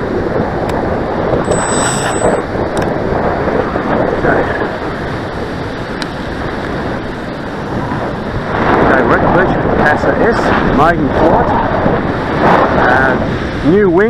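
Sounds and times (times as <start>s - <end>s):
gusty wind buffeting microphone: 0.0s - 14.0s
surf on beach: 0.0s - 14.0s.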